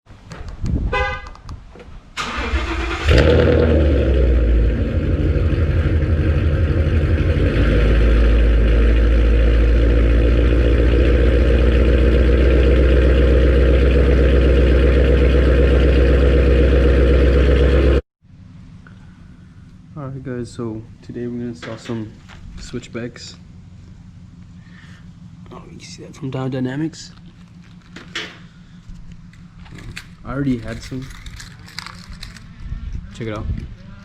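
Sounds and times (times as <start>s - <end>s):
car engine starting and idling: 2.1s - 34.0s
starter motor cranking: 2.2s - 3.5s.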